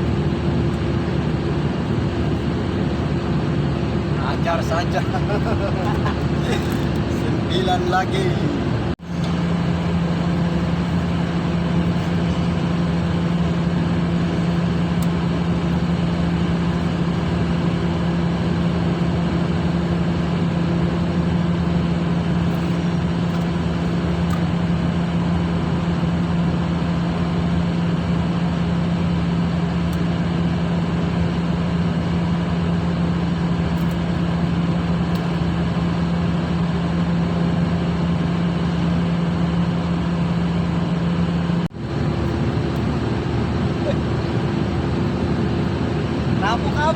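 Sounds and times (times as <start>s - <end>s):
ship engine drone: 0.0s - 46.9s.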